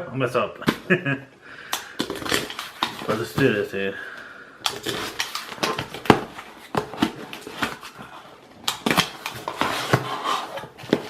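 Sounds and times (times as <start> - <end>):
package being handled: 1.8 - 3.7, 4.6 - 11.0.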